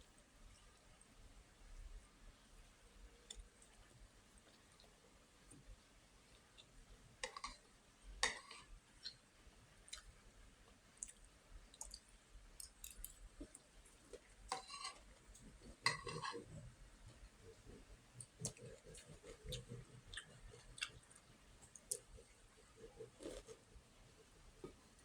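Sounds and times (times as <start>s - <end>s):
mouth clicks and chewing: 11.0s - 13.6s, 18.2s - 22.3s.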